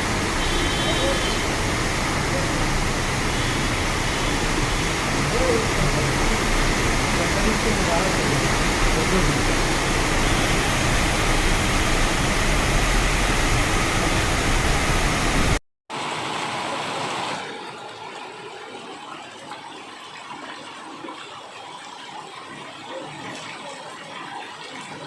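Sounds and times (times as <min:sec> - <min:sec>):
heavy rain pouring: 0:00.0 - 0:18.0.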